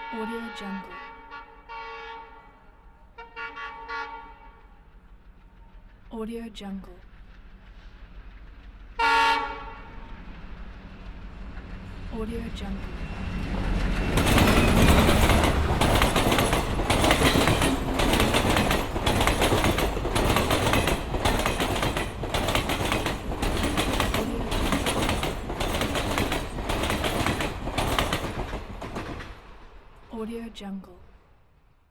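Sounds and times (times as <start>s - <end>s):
steam train running: 3.9s - 30.1s
wheels clattering over rails: 13.3s - 29.6s.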